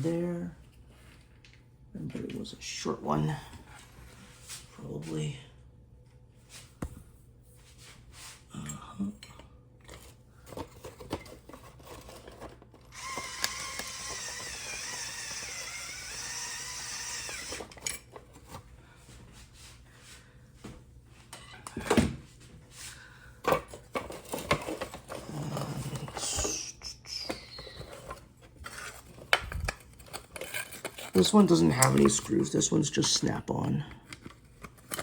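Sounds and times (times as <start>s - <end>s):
electric screwdriver running: 12.9s - 17.8s.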